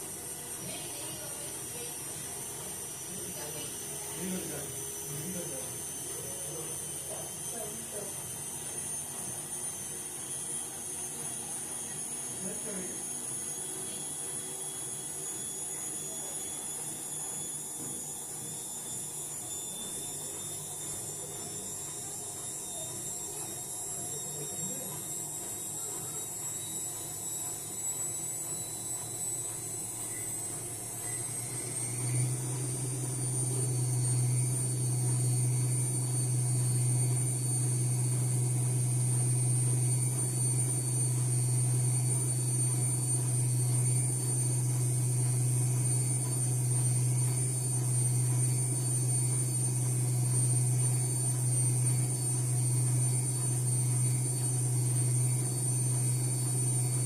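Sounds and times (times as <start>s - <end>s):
appliance motor humming: 0.0s - 57.0s
high whine: 25.8s - 57.0s.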